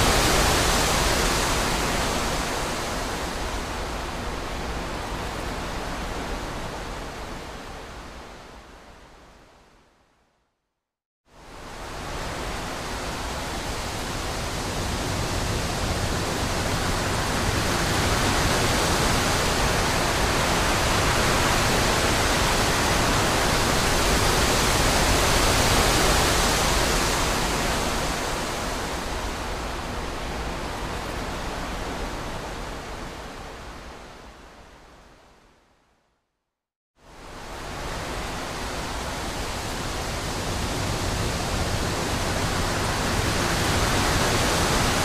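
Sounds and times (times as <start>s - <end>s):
wind rushing through trees: 0.0s - 10.2s, 11.3s - 36.2s, 37.0s - 45.0s.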